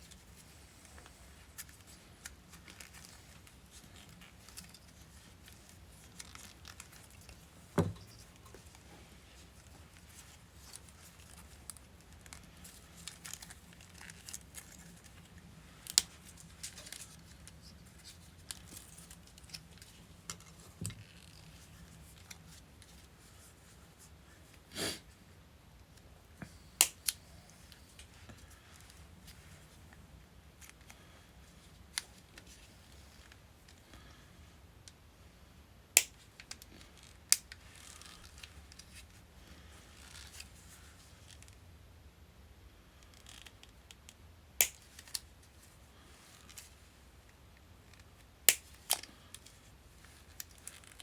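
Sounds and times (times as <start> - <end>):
wiring harness rustling: 47.8 - 51.0.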